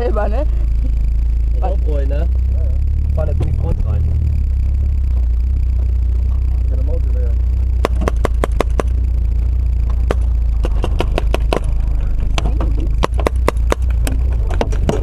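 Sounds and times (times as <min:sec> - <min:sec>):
low rumble: 0:00.0 - 0:15.0
sharp clicks and cracks: 0:07.7 - 0:15.0.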